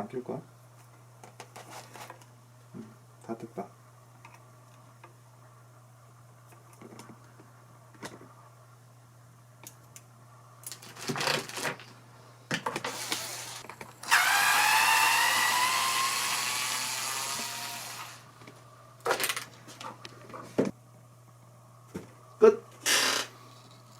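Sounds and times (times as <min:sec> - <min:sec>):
electric drill whining: 0:12.8 - 0:18.3.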